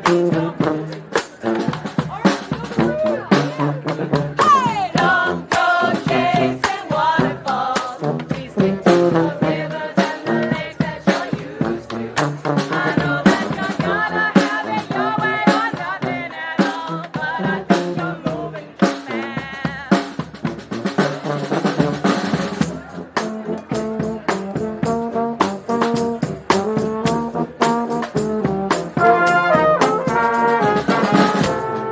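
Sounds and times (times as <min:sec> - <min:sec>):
brass band playing: 0:00.0 - 0:31.9
snare and bass drum beat: 0:00.0 - 0:31.9.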